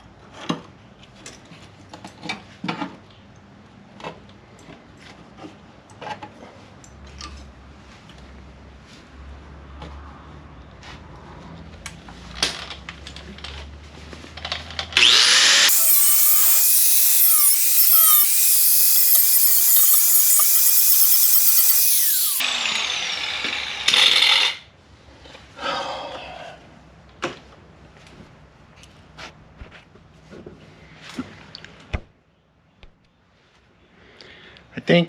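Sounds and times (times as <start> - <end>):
power tool cutting sheet steel: 15.0 - 24.3
power tool winding down: 15.0 - 24.3.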